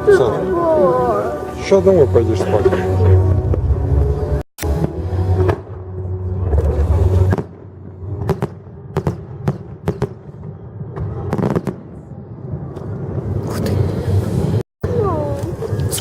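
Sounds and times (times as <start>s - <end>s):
fireworks bangs: 4.7s - 14.6s.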